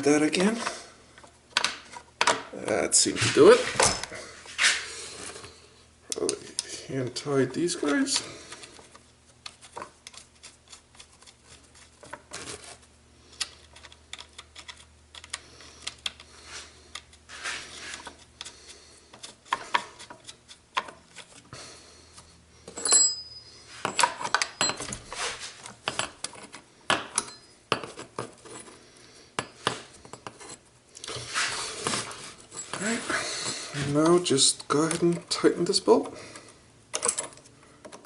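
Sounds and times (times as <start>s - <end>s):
sharp ringing clink: 22.8s - 23.7s, 27.2s - 27.6s
metal parts clicking and rattling: 36.9s - 38.0s.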